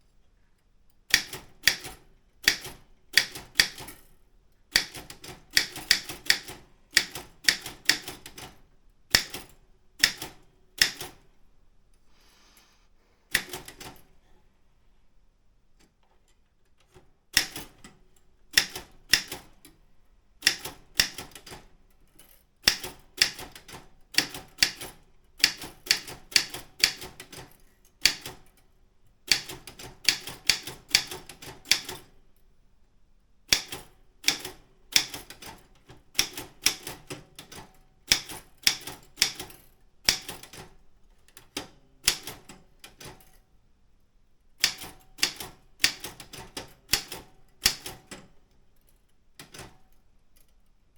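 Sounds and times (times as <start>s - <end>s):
typewriter key strikes: 1.1s - 4.0s, 4.7s - 11.2s, 20.4s - 28.5s, 29.3s - 32.1s, 33.5s - 35.6s, 36.2s - 40.7s, 41.4s - 43.3s, 44.6s - 48.3s.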